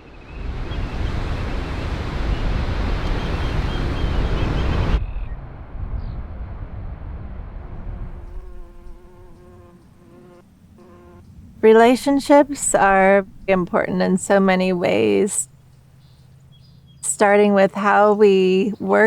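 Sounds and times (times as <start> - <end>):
outdoor rushing noise: 0.0 - 9.3
insect buzzing: 8.2 - 17.3.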